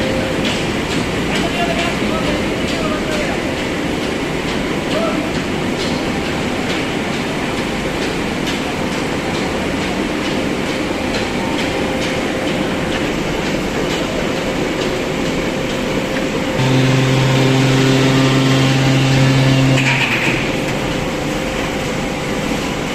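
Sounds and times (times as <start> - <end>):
baling press mechanical din: 15.1 - 22.9.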